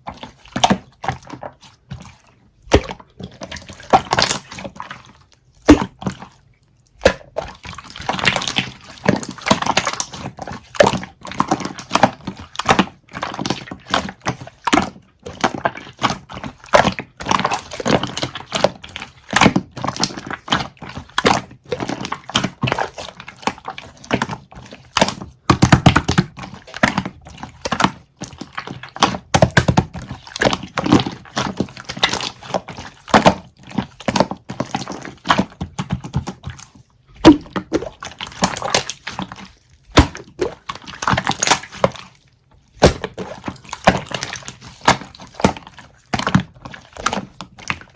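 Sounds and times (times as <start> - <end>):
wet eating squelches: 26.4 - 47.9.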